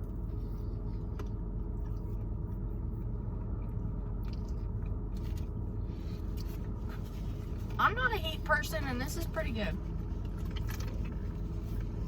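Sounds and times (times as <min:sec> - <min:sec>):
faint chewing: 0:00.0 - 0:07.8
car idling inside cabin: 0:00.0 - 0:12.0.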